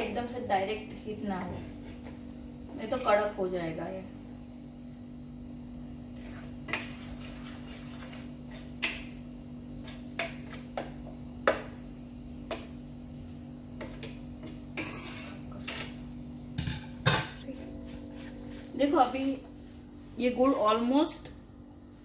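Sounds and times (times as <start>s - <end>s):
steady low hum: 0.0s - 22.0s
metal spoon scraping a pan: 14.7s - 16.0s.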